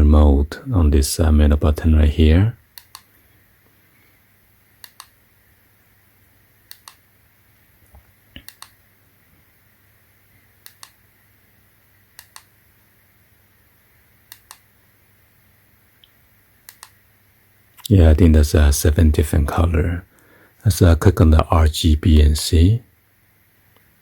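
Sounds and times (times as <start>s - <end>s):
remote control button clicking: 4.8s - 5.2s, 12.2s - 12.5s, 14.3s - 14.7s, 16.0s - 17.0s.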